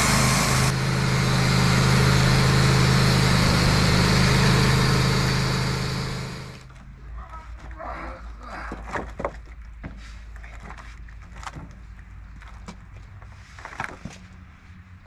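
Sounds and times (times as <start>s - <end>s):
motor humming: 0.0s - 6.7s.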